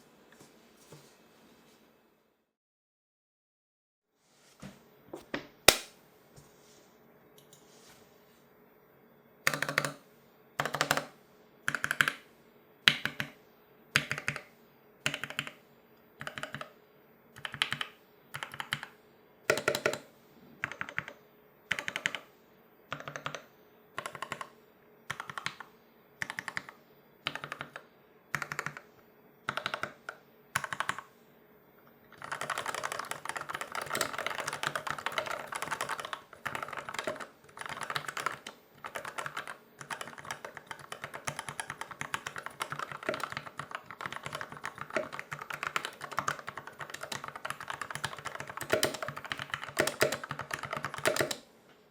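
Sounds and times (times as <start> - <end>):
fast continuous typing: 9.5 - 10.0, 10.6 - 11.1, 11.7 - 12.2, 12.9 - 15.6, 16.2 - 16.8, 17.4 - 22.3, 22.9 - 28.9, 29.5 - 31.1, 32.2 - 51.4
mechanical keyboard key presses: 9.5 - 10.0, 32.2 - 51.4.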